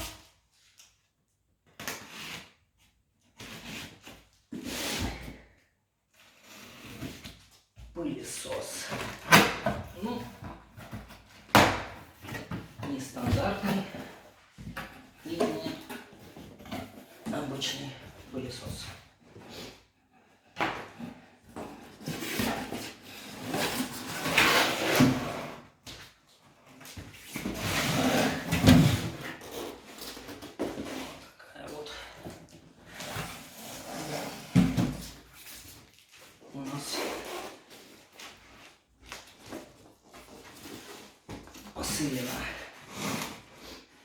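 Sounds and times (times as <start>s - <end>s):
cardboard box rubbing and scraping: 27.4s - 30.0s, 32.9s - 35.0s.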